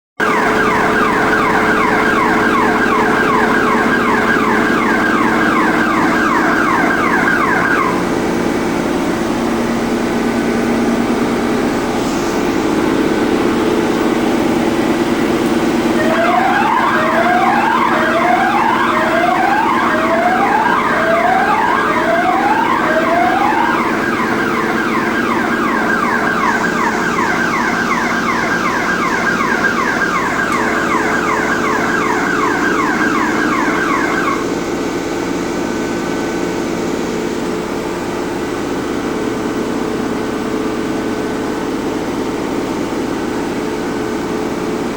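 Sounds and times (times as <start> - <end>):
electronic siren sweeping downward: 0.2 - 42.5
machinery hum: 0.2 - 44.9.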